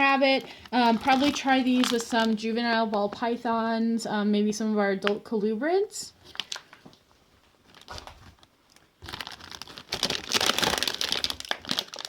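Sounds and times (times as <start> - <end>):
plastic packaging crinkling: 0.0 - 3.2, 6.2 - 12.0.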